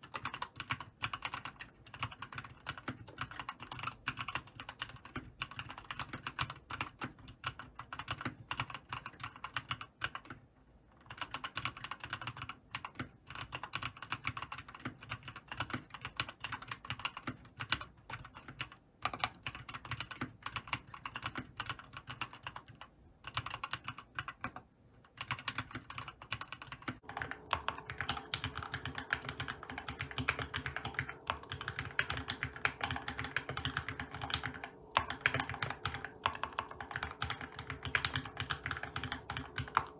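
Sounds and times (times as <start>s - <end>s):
typing on mechanical keyboard: 0.0s - 10.4s, 11.0s - 39.9s
faint steady hum: 25.0s - 39.9s.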